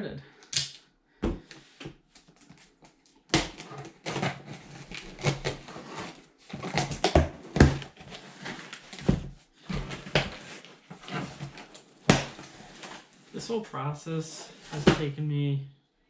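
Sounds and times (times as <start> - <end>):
boxes being handled and opened: 1.2 - 13.6, 14.4 - 15.1.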